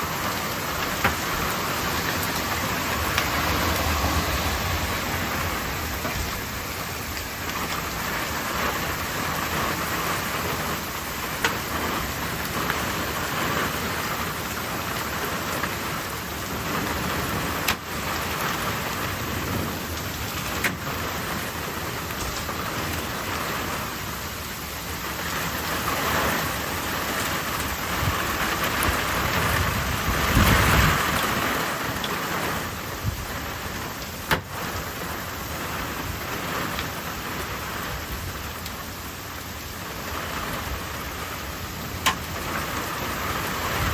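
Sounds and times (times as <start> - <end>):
low thunder rumble: 0.0 - 10.8, 27.8 - 31.5
heavy rain pouring: 0.0 - 43.9.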